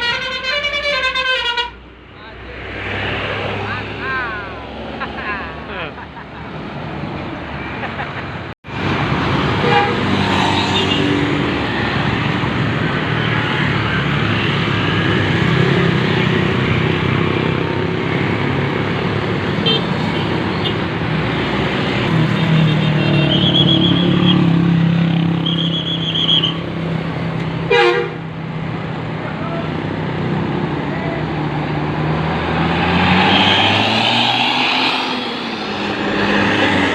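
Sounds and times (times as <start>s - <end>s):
high horn toots: 0.0s - 1.8s, 9.6s - 11.0s, 27.7s - 28.2s
bus engine humming: 14.7s - 36.9s.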